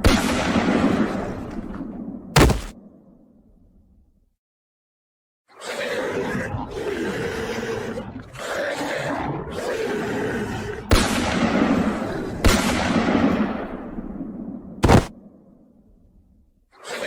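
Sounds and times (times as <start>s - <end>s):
sharp hit: 2.4s - 2.7s.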